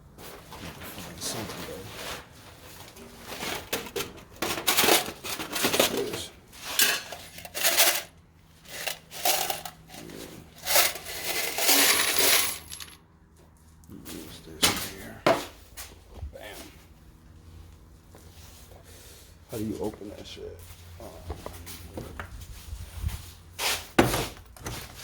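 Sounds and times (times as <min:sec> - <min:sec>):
hard objects clinking and clattering: 0:03.3 - 0:13.0.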